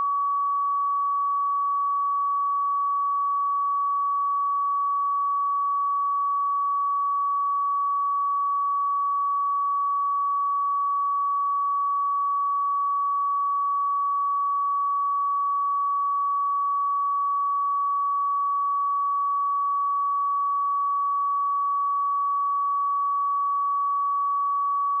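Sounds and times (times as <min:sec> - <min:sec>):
sine wave test tone: 0:00.0 - 0:25.0.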